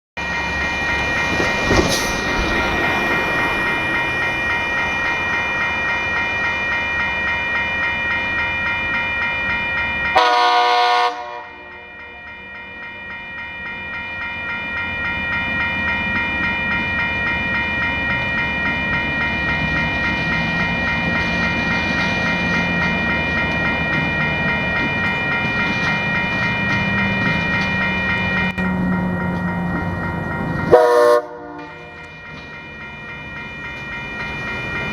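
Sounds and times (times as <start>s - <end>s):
locomotive engine: 0.2s - 34.9s
pulsing ringing bell: 0.2s - 34.9s
train horn blast: 10.2s - 11.9s, 30.7s - 31.9s.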